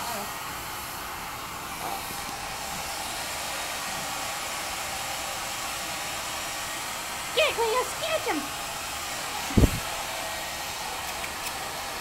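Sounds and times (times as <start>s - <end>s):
hair dryer blowing: 0.0s - 12.0s.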